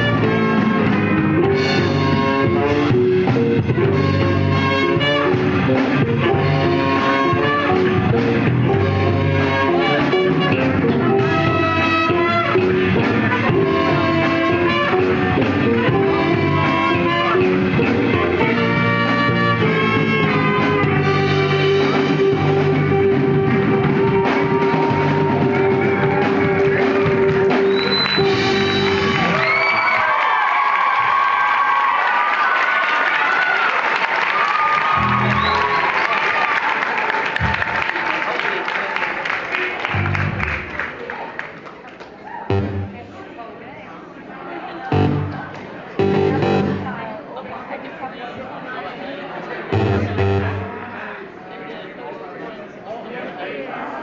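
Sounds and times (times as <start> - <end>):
funk jazz band playing: 0.0 - 29.4, 34.9 - 35.9, 39.8 - 40.7, 42.5 - 43.2, 44.9 - 47.3, 49.7 - 51.0.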